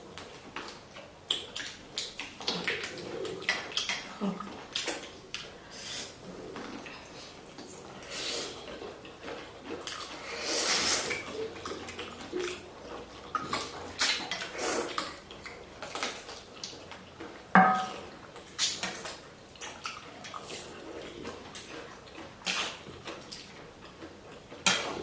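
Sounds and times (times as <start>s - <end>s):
slurping noodles: 9.9s - 15.2s.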